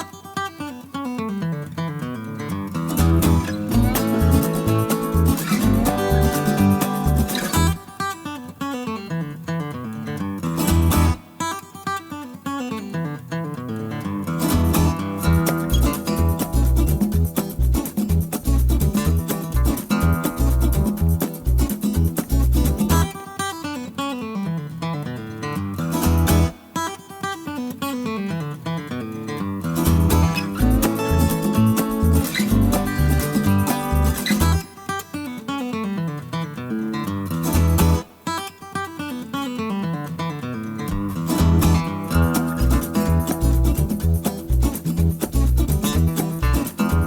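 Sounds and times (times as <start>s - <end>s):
acoustic guitar melody: 0.0s - 47.0s
bass line: 3.0s - 7.8s, 14.5s - 23.1s, 29.8s - 34.6s, 40.9s - 47.0s.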